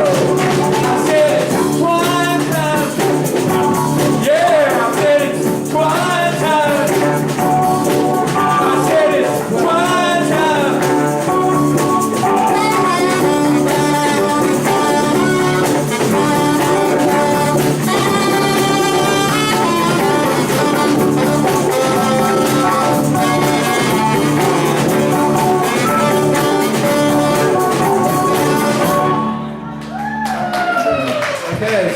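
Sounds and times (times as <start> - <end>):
person singing: 0.0 - 3.1, 4.0 - 7.5, 8.3 - 11.7
dance band playing with horns: 0.0 - 29.6.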